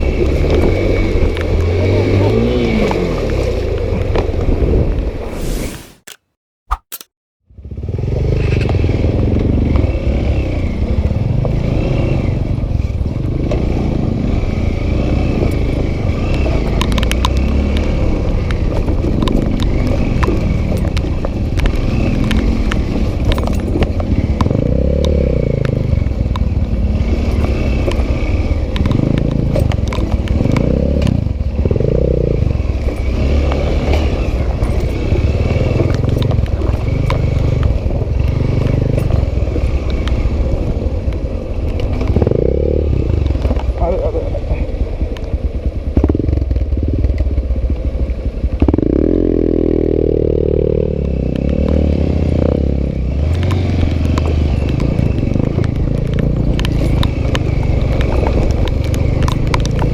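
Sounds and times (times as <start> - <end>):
dirt bike engine revving: 7.8 - 40.8, 48.6 - 59.9
clicks and clatter: 53.3 - 59.9.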